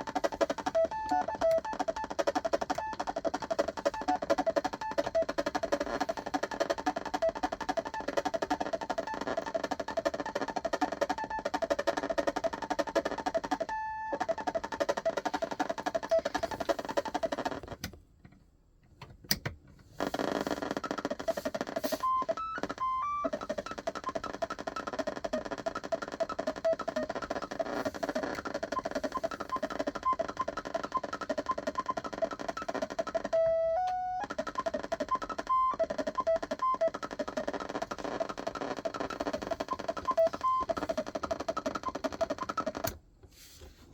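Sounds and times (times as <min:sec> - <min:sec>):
electronic toy music: 0:00.0 - 0:17.7, 0:20.4 - 0:43.0.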